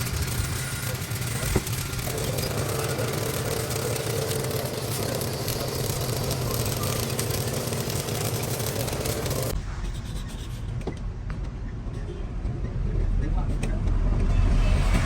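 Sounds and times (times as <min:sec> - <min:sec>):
machine humming: 0:00.0 - 0:09.6.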